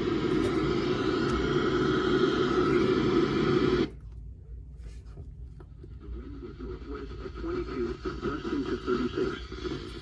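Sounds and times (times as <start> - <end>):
radio static hiss: 0.0 - 3.9, 6.0 - 10.0.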